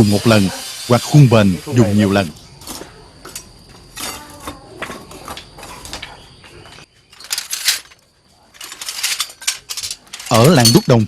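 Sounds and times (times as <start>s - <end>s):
hand tools scraping and knocking: 2.6s - 11.0s.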